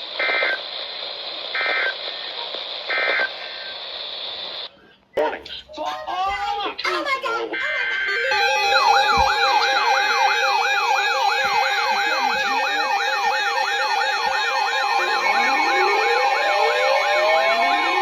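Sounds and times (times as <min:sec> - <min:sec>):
electronic siren yelp: 0:07.6 - 0:18.0
hi-lo siren pattern: 0:07.6 - 0:18.0
siren wail: 0:07.7 - 0:18.0
steady siren tone: 0:08.1 - 0:18.0.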